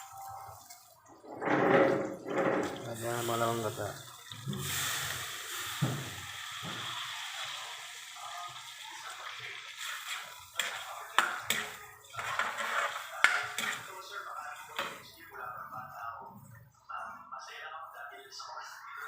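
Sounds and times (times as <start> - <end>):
water running: 0.0 - 17.1.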